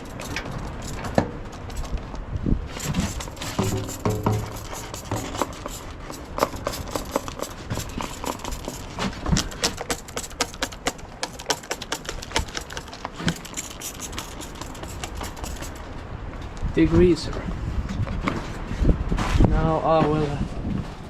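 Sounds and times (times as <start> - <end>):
rapid irregular clicks and knocks: 0.0 - 16.5.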